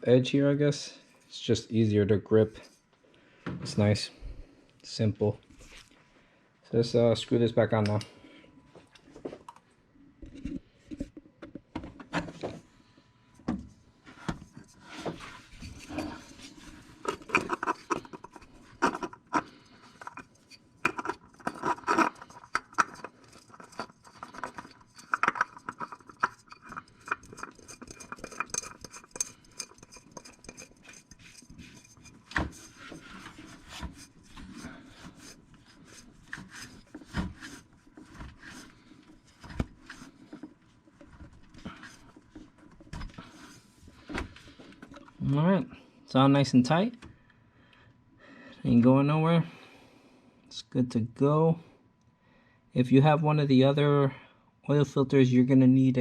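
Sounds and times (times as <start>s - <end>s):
metal filter scraping on threads: 14.3s - 44.1s.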